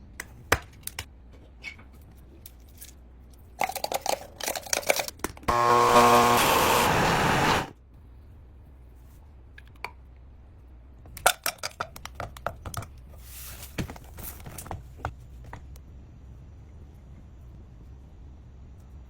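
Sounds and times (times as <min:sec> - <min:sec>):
loud machine noise: 0:05.5 - 0:07.7.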